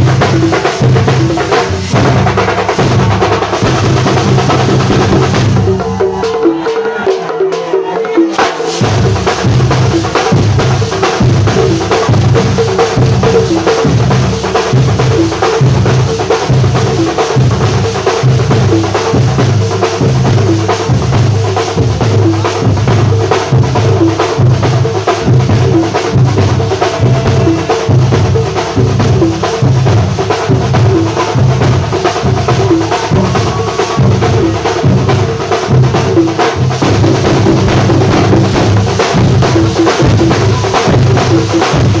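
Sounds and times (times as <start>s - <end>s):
music with drum-kit beat: 0.0s - 42.0s.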